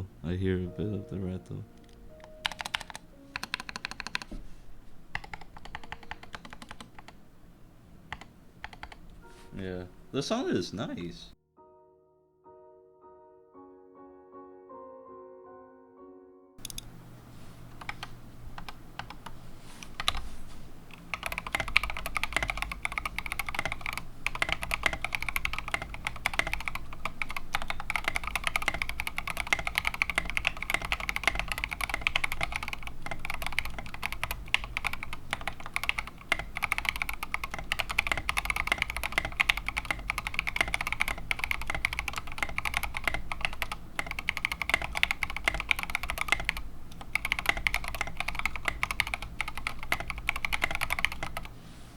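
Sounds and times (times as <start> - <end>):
fast typing on mechanical keyboard: 1.8 - 4.3, 5.1 - 7.2, 8.1 - 9.1, 16.6 - 16.9, 17.7 - 20.3, 20.9 - 51.5.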